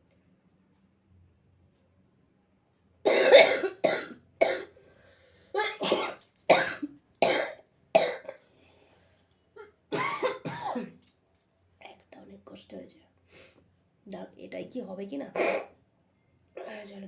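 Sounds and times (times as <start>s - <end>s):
person coughing: 3.1s - 4.7s, 5.6s - 8.4s, 9.9s - 11.0s, 15.4s - 15.7s.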